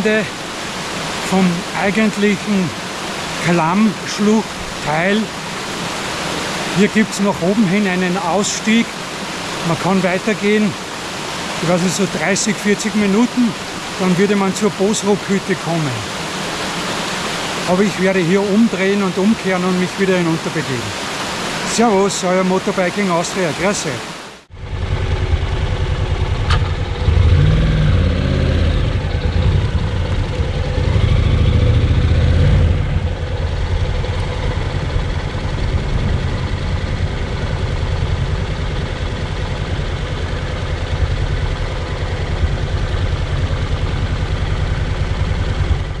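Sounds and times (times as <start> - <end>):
motorcycle engine revving: 24.5 - 46.0.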